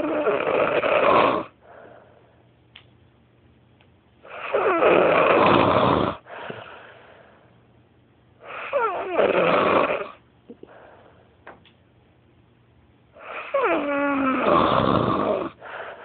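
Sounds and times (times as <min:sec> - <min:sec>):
loud rattling snoring: 0:00.0 - 0:01.5, 0:04.3 - 0:06.2, 0:08.5 - 0:10.2, 0:13.2 - 0:15.6
soft breath: 0:01.6 - 0:02.5, 0:06.2 - 0:07.6, 0:10.6 - 0:11.4, 0:15.5 - 0:16.0.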